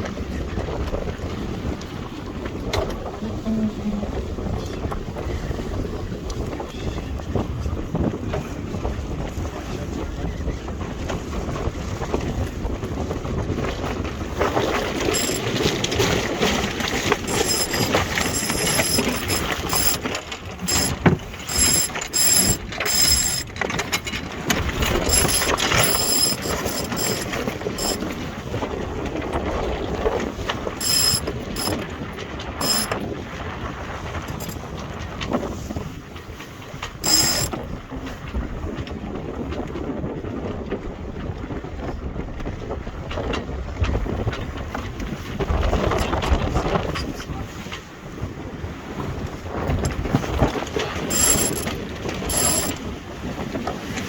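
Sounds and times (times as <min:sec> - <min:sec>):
boat gear clicking and rattling: 0:14.4 - 0:28.4, 0:30.5 - 0:33.0, 0:34.2 - 0:34.6, 0:37.0 - 0:37.6, 0:49.7 - 0:52.9.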